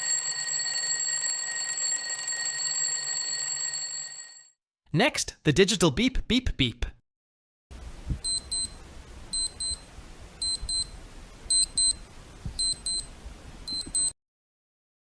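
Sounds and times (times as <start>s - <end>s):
digital alarm clock beeping: 8.2s - 9.8s, 10.4s - 10.9s, 11.5s - 12.0s, 12.6s - 13.1s, 13.7s - 14.2s.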